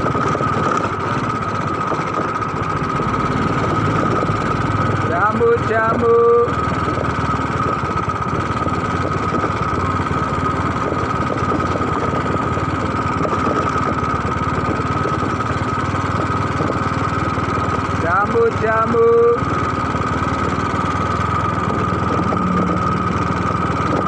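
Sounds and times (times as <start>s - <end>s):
engine running steadily: 0.0s - 24.0s
constant high tone: 21.0s - 24.0s.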